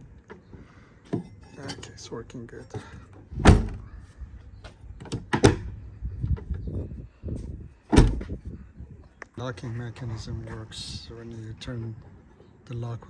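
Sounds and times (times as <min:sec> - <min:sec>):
tailgate latch clicks: 0:03.4 - 0:03.9
tailgate thudding shut: 0:03.4 - 0:03.9, 0:05.1 - 0:05.7, 0:07.9 - 0:08.4.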